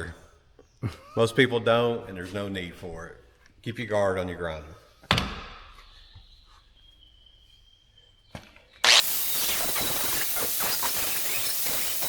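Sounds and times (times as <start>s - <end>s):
angle grinder grinding metal: 8.8s - 12.0s.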